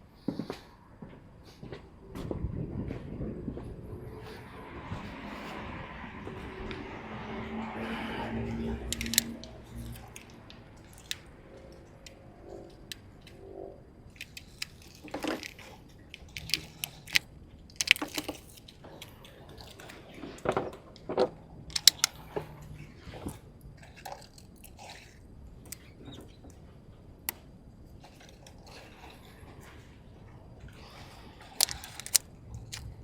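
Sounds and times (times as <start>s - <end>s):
clicks snips and crunches: 8.9s - 10.3s, 16.2s - 17.2s, 17.8s - 18.6s, 21.7s - 22.1s, 31.6s - 33.0s.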